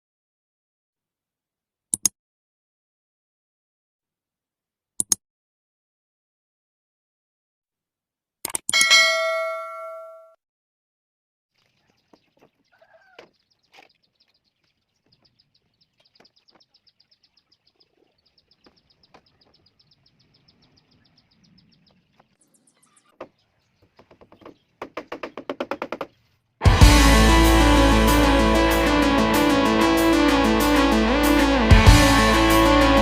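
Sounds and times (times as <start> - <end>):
metallic strike ringing: 8.8 - 10.3.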